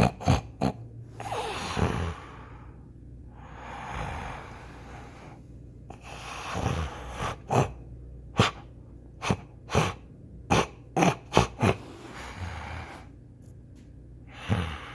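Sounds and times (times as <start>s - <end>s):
dog snoring: 0.0s - 2.7s, 3.4s - 7.8s, 9.2s - 13.1s, 14.3s - 14.9s.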